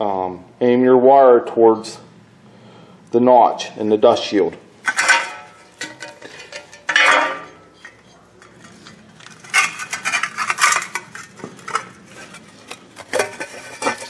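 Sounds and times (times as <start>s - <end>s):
metal clinks and scrapes: 4.8s - 14.0s.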